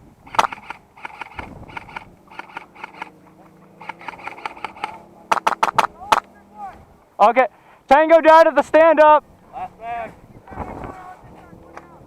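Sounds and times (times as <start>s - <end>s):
close airsoft gun firing: 0.3s - 3.0s, 3.8s - 6.2s
distant airsoft gun shots: 0.3s - 3.1s, 3.8s - 6.3s.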